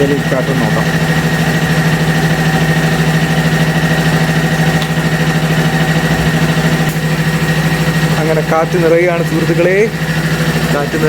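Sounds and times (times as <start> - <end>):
air compressor running: 0.0 - 11.0.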